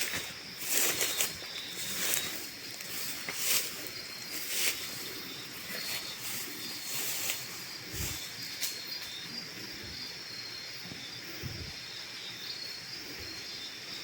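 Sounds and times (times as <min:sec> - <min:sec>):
background hiss: 0:00.0 - 0:14.0
insects chirping: 0:00.0 - 0:14.0.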